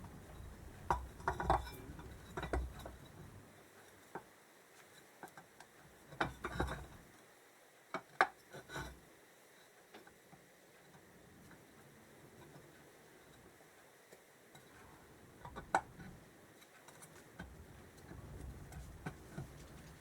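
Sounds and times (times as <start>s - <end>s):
metal engine parts clinking: 0.0s - 3.3s.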